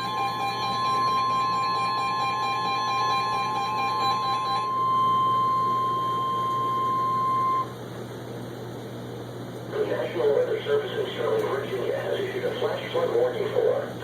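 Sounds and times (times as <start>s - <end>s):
steady warning alarm tone: 0.0s - 7.8s
pulsing beep: 0.6s - 7.7s.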